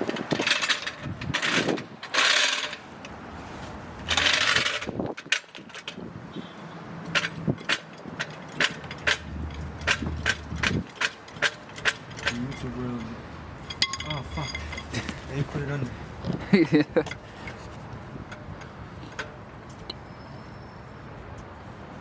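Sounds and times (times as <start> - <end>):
floor jack clicking: 4.0 - 6.0
metal scraping: 7.0 - 15.7.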